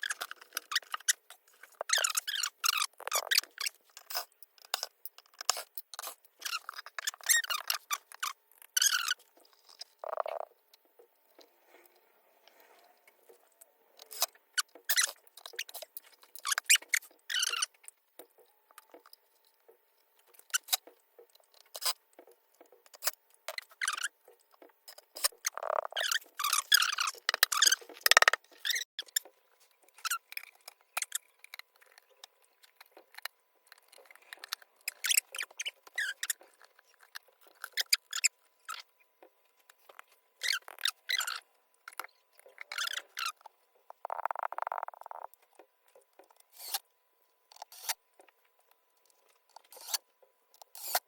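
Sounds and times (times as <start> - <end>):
screwdriver turning screws: 25.2 - 29.1.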